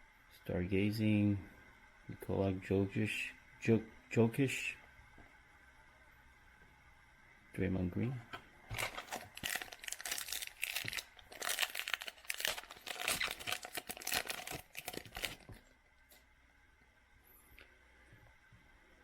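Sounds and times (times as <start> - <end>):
foil wrapper crinkling and tearing: 8.7 - 15.6.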